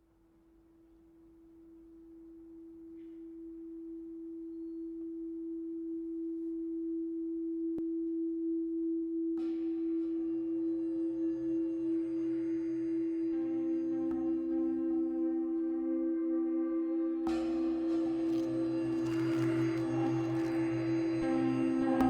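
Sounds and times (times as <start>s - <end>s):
pure steady tone: 0.0s - 22.0s
low drone: 10.3s - 22.0s.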